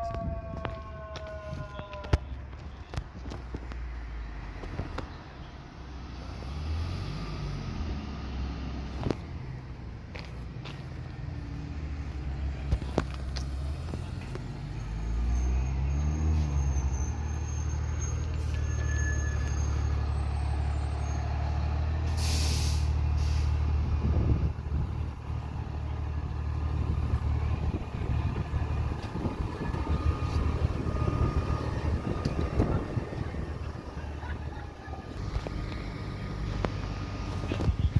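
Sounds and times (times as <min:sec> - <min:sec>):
heavy truck engine running: 0:00.6 - 0:37.9
air brakes hissing: 0:16.0 - 0:23.7.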